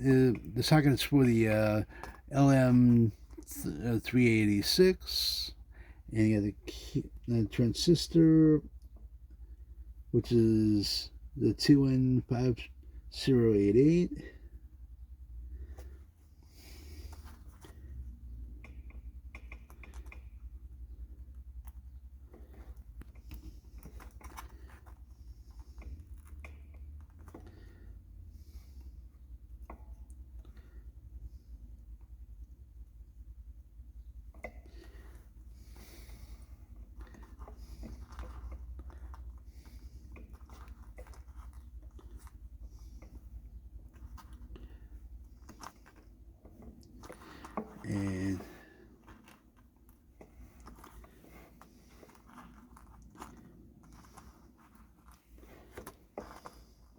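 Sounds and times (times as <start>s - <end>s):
steady low hum: 0.0s - 56.9s
light clicks and crinkling: 16.9s - 33.3s, 34.0s - 56.9s.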